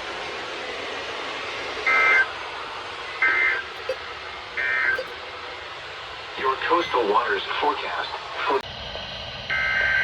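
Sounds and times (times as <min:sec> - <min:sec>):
warbling data tones: 0:03.8 - 0:04.0, 0:04.9 - 0:05.2
broadcast hiss: 0:06.2 - 0:08.6.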